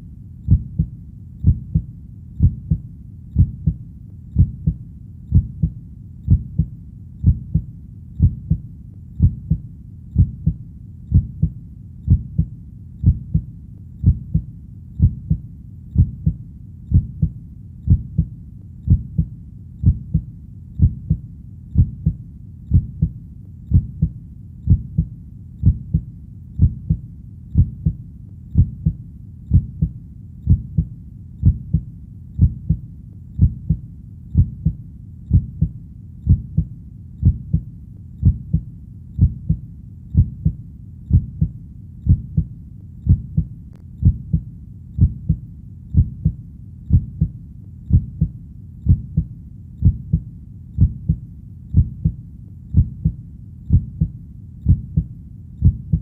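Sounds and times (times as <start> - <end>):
human heartbeat thumps: 0.5 - 3.8, 4.4 - 15.4, 16.0 - 18.3, 18.9 - 21.2, 21.8 - 27.0, 27.6 - 28.0, 28.6 - 32.8, 33.4 - 33.8, 34.4 - 42.5, 43.1 - 50.2, 50.8 - 56.0.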